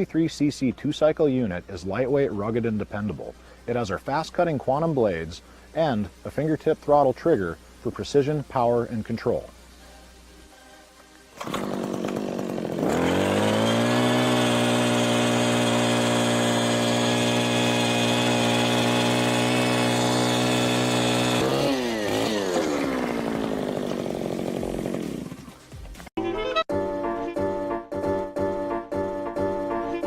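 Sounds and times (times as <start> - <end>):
ice auger engine revving: 11.4 - 25.7.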